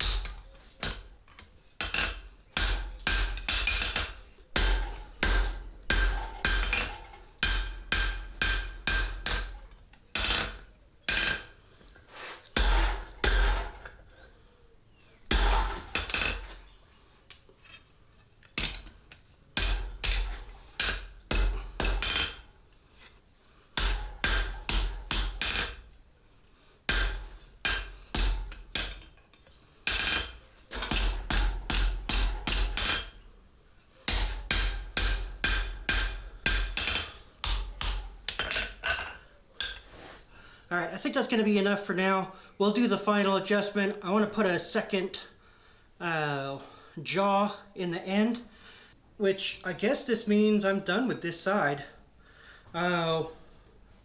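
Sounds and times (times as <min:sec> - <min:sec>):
hammer striking steel on anvil: 0:01.8 - 0:09.6, 0:19.6 - 0:22.4, 0:23.8 - 0:25.8, 0:26.9 - 0:29.1, 0:29.9 - 0:33.2, 0:34.1 - 0:39.8.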